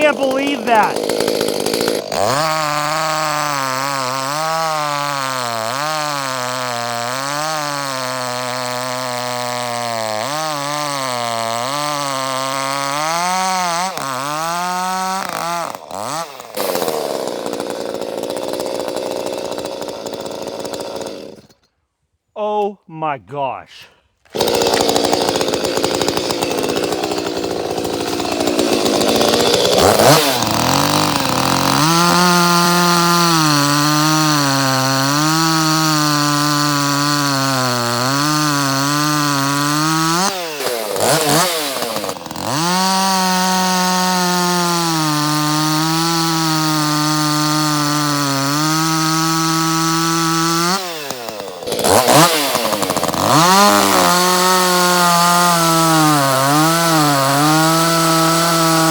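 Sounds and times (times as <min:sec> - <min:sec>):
chainsaw cutting wood: 0:00.0 - 0:21.8, 0:24.2 - 0:58.9.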